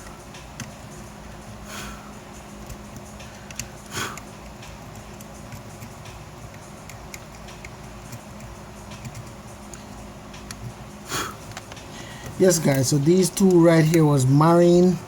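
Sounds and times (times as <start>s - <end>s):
steady low hum: 0.0s - 15.0s
small tools clicking and tapping: 2.6s - 10.8s, 11.4s - 14.2s.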